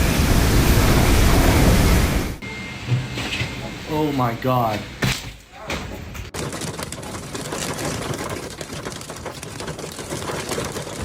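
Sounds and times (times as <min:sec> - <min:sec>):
heavy rain: 0:00.0 - 0:02.4
strong wind rushing: 0:00.0 - 0:02.4.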